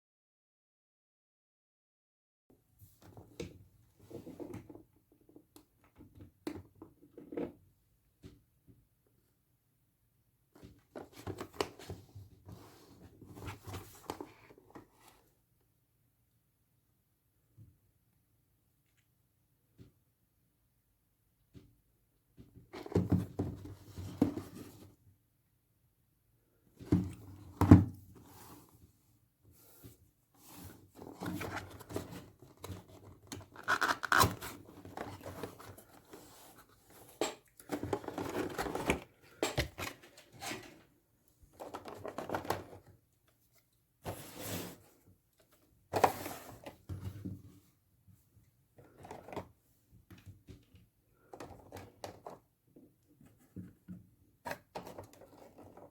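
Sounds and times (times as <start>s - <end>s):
packaging rustling and tearing: 33.6s - 34.6s.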